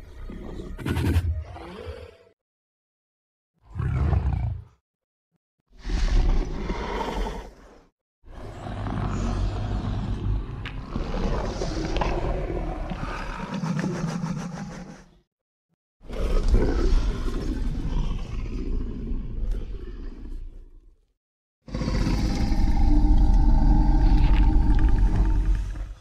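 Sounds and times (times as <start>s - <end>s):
creature roar: 21.7s - 26.0s.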